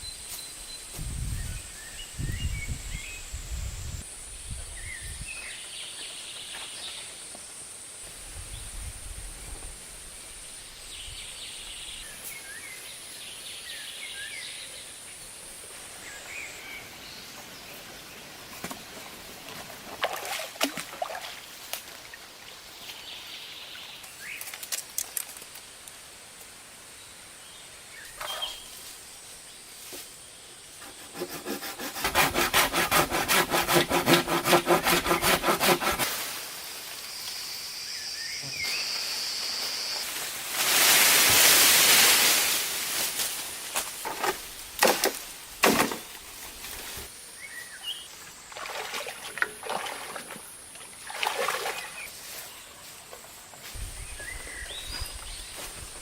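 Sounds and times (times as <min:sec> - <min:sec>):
steady high-pitched hiss: 0:00.0 - 0:20.0, 0:21.4 - 0:31.3, 0:36.0 - 0:48.6, 0:52.0 - 0:56.0
rustles: 0:15.4 - 0:31.0, 0:34.9 - 0:48.4, 0:50.3 - 0:56.0.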